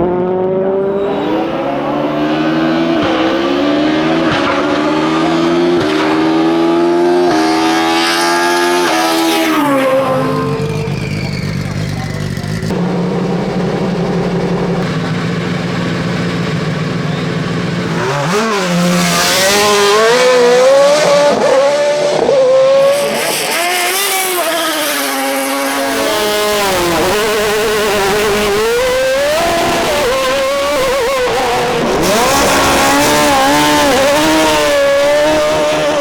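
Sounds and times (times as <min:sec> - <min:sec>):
race car engine accelerating: 0:00.0 - 0:36.0.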